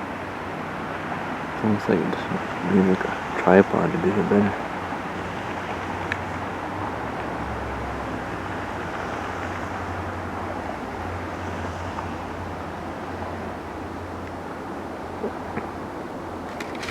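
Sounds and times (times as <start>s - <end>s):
steady hiss: 0.0s - 4.6s
low constant hum: 0.0s - 16.9s.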